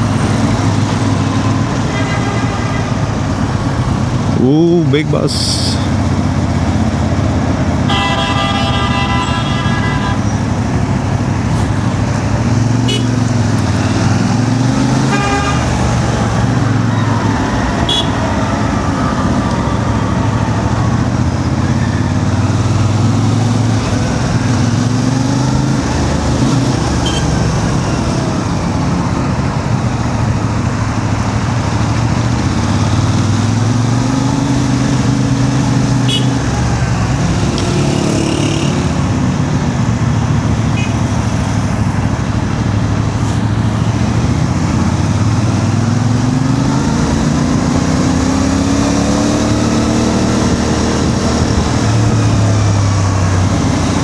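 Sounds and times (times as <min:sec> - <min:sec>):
motorcycle engine running: 0:00.0 - 0:54.0
vehicle horn honking: 0:01.8 - 0:03.3, 0:07.8 - 0:10.6, 0:12.8 - 0:13.3, 0:14.9 - 0:19.8, 0:27.0 - 0:27.4, 0:36.0 - 0:36.6, 0:40.7 - 0:41.2.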